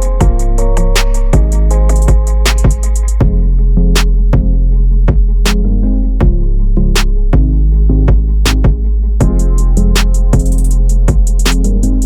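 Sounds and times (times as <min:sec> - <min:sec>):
drum machine hits: 0:00.0 - 0:03.4, 0:08.1 - 0:12.0
bass line: 0:00.0 - 0:12.0
electronic music: 0:00.0 - 0:12.0.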